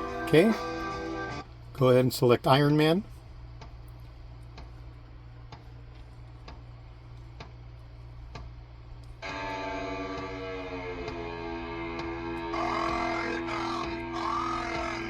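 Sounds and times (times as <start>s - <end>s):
music from radio speaker: 0.0s - 1.5s, 9.2s - 15.0s
low electrical hum: 0.0s - 15.0s.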